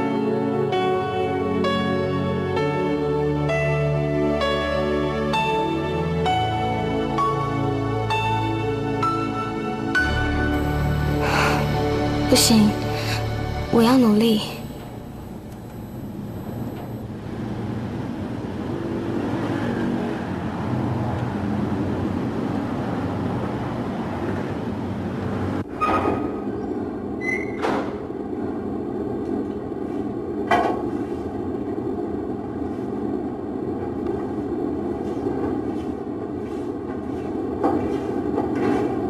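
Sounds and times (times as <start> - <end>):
low rumbling background noise: 0.0 - 39.0
faint steady hum: 10.1 - 18.5.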